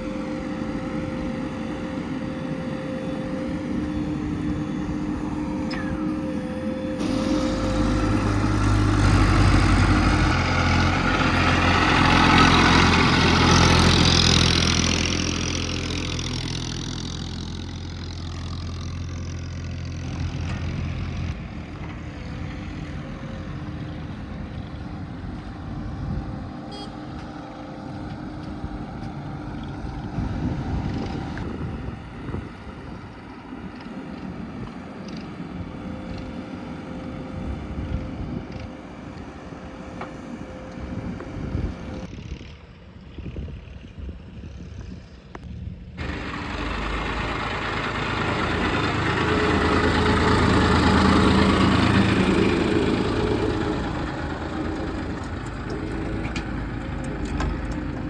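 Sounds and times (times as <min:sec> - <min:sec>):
diesel engine under load: 0:00.0 - 0:58.0.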